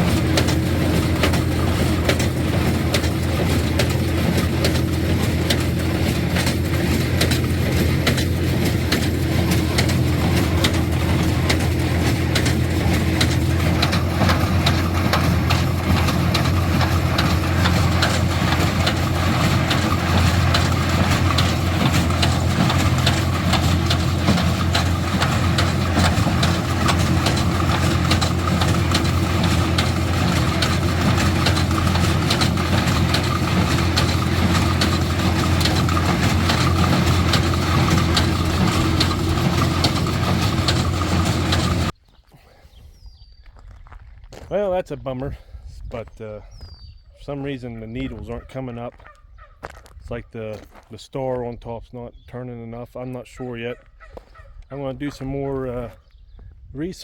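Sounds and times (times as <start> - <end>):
baler mechanism clattering: 0.0 - 41.9
diesel tractor engine running: 0.0 - 42.0.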